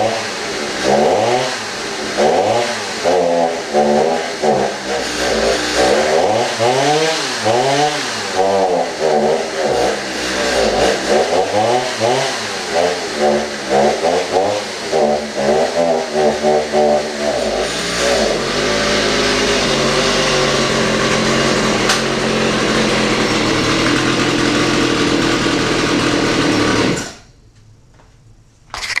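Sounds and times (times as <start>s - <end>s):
chainsaw revving: 0.0s - 27.3s.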